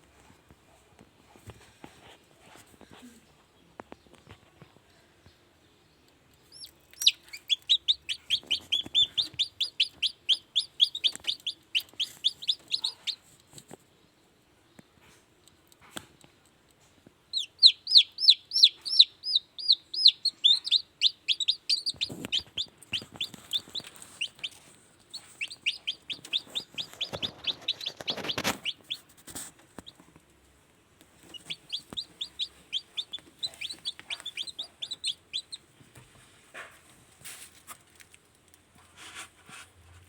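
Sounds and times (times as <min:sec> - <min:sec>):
chicks peeping: 0:03.5 - 0:13.8, 0:17.2 - 0:30.3, 0:31.0 - 0:36.9
rustling: 0:21.7 - 0:40.0.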